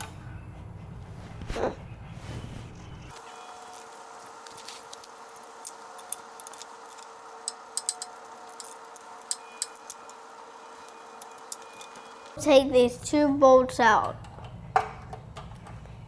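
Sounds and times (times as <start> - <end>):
wrench clicking on metal nuts: 6.4 - 10.2.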